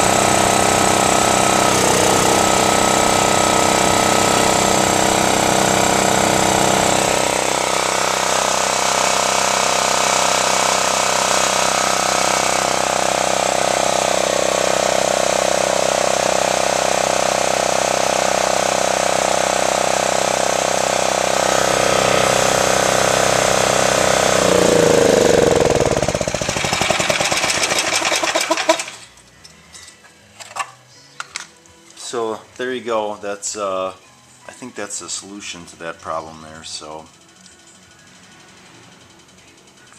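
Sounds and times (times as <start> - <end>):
generator engine running: 0.0 - 29.1.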